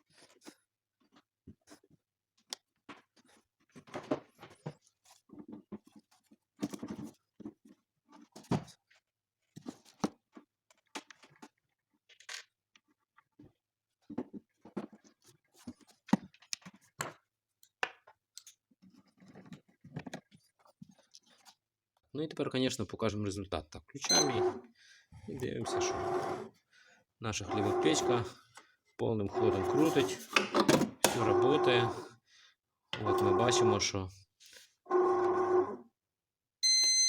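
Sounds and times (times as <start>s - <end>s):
plastic parts clicking and scraping: 9.6s - 21.6s.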